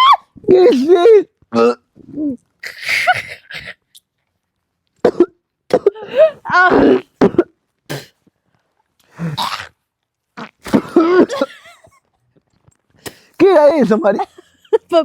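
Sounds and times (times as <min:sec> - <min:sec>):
person coughing and clearing throat: 0:05.0 - 0:08.2, 0:10.6 - 0:11.6.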